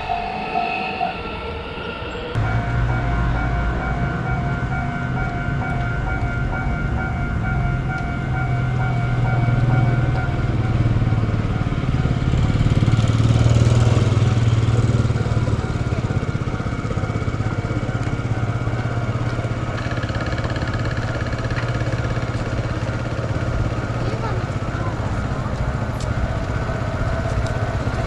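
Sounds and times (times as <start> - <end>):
vehicle engine running: 2.4 - 28.0.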